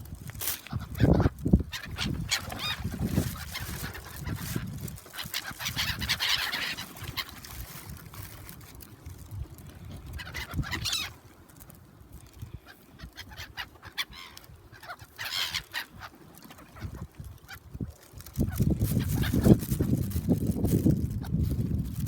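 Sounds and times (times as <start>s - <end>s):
gulls calling: 0.6s - 7.5s, 10.0s - 11.4s, 12.5s - 17.6s.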